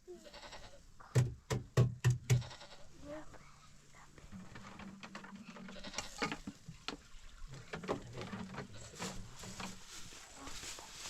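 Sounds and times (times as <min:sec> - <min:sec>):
sheep and goats bleating: 0:00.1 - 0:00.8, 0:02.3 - 0:03.0, 0:05.5 - 0:06.4.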